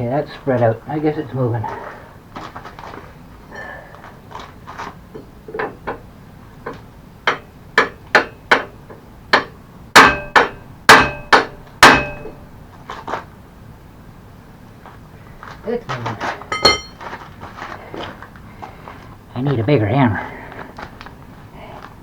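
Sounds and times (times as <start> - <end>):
hammer striking metal pin: 9.4 - 12.4, 16.5 - 17.0.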